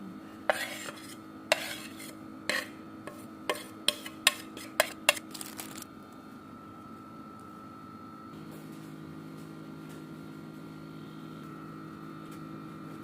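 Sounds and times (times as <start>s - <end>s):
appliance hum: 0.0s - 13.0s
metal utensil scraping a bowl: 0.5s - 5.8s.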